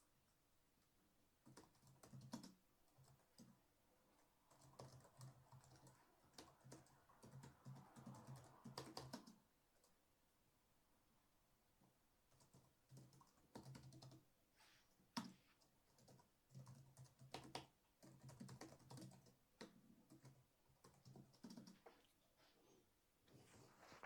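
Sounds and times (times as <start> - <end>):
keyboard typing: 1.4 - 10.0, 12.3 - 14.2, 15.2 - 22.1.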